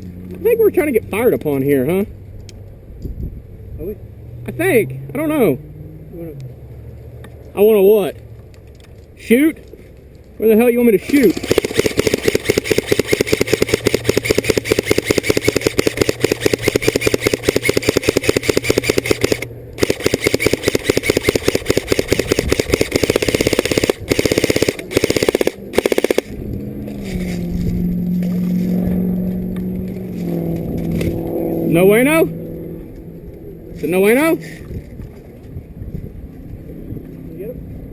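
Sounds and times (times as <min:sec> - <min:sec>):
vehicle engine running: 0:00.0 - 0:37.9
airsoft rifle firing: 0:11.0 - 0:26.4.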